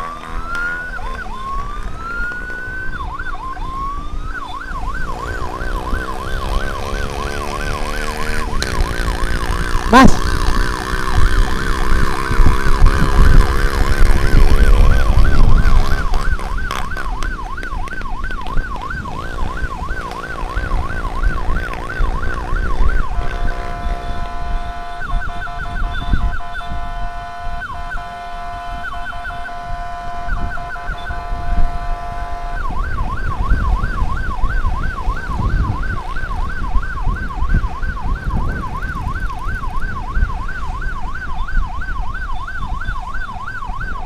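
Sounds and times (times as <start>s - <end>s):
emergency vehicle siren: 0.0s - 44.0s
engine and road rumble: 0.0s - 44.0s.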